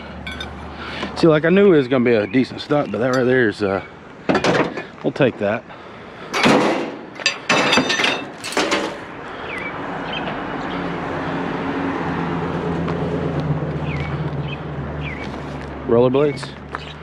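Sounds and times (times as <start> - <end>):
vehicle engine hum: 0.0 - 5.0, 8.3 - 17.0
junk clattering: 4.3 - 4.9, 6.3 - 9.0.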